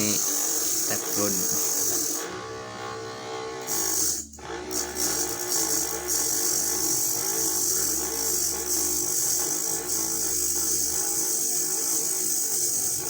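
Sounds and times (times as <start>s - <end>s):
high hiss of turning: 0.0s - 1.8s
lathe motor whining: 0.0s - 13.0s.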